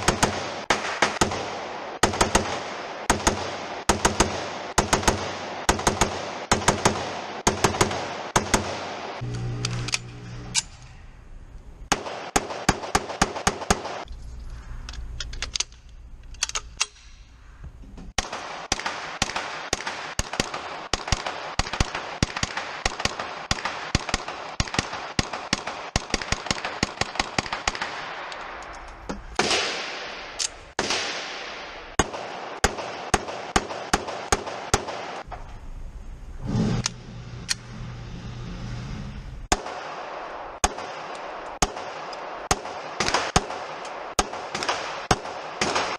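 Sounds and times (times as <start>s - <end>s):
gun blasts: 0.0s - 9.2s, 11.9s - 14.1s, 18.2s - 28.6s, 29.2s - 35.4s, 39.4s - 45.9s
rapid gunfire: 0.0s - 9.2s, 11.9s - 14.0s, 18.2s - 28.2s, 39.5s - 45.9s.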